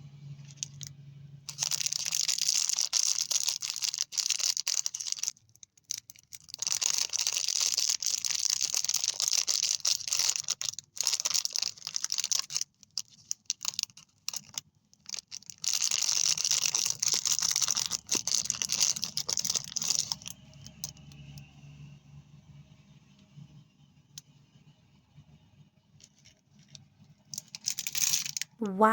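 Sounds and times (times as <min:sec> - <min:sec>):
plastic wrappers crinkling: 0:00.4 - 0:00.9, 0:01.5 - 0:21.1, 0:26.1 - 0:28.6.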